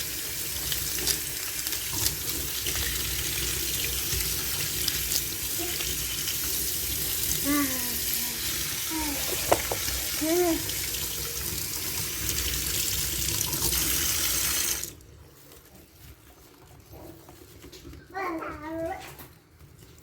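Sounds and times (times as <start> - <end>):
tap water running: 0.0 - 15.1.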